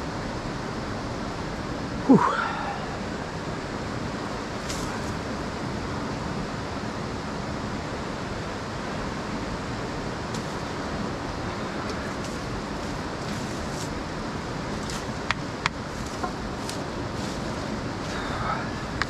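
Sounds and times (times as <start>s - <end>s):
river rapids roaring: 0.2s - 19.0s.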